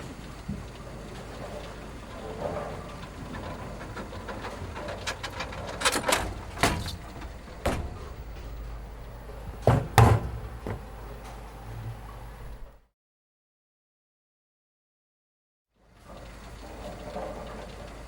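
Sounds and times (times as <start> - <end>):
knocks and thuds: 6.3 - 8.7, 9.4 - 10.9.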